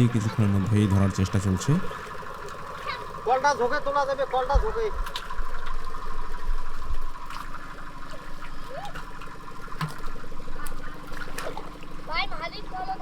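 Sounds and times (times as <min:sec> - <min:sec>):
small engine running: 0:00.0 - 0:13.0.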